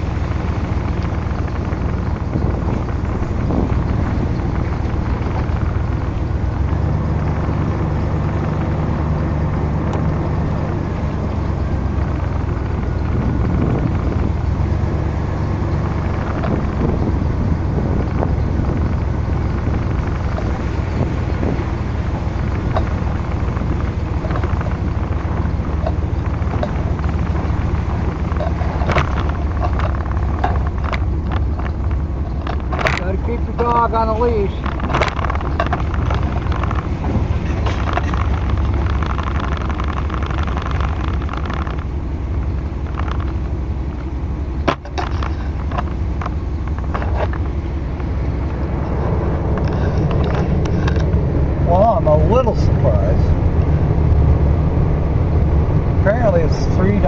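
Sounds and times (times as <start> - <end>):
road noise while driving: 0.0 - 57.0
vehicle engine hum: 0.0 - 57.0
sharp clicks: 18.0 - 43.5.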